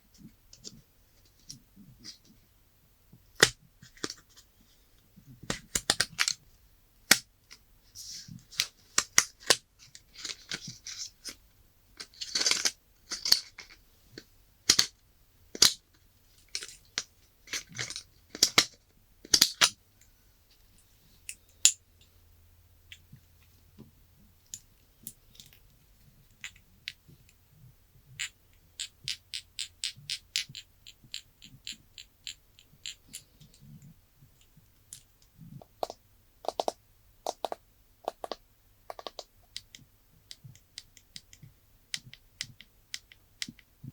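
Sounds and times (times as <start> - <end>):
handling taps and clicks: 28.1 - 43.7.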